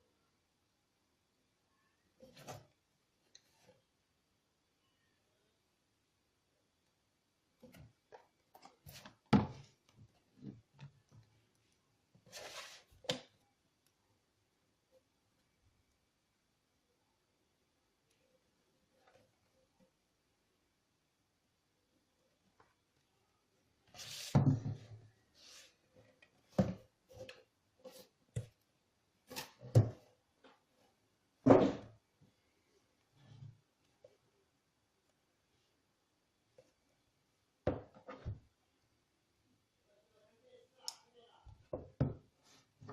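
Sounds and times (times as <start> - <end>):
box thumps and knocks: 31.5 - 31.9.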